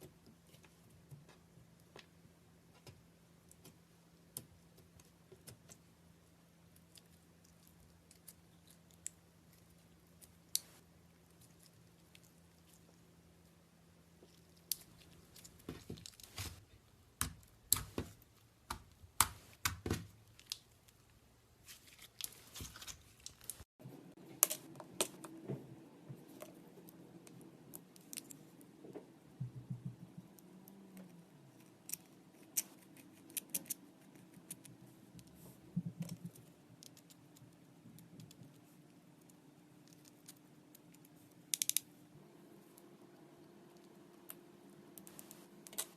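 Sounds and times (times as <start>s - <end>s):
faint steady hum: 0.0s - 45.9s.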